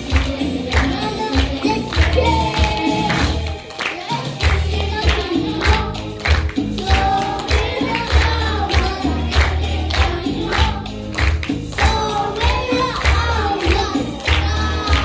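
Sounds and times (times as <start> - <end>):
bass beat and percussion: 0.0 - 15.0
group singing worship song: 0.0 - 15.0.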